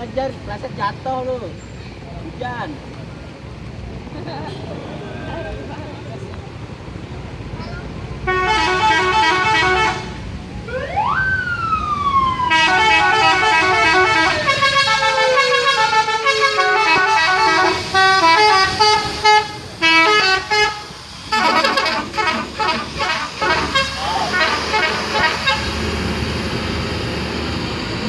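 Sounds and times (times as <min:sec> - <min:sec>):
musical bus horn melody: 0:08.1 - 0:10.5, 0:12.5 - 0:26.1.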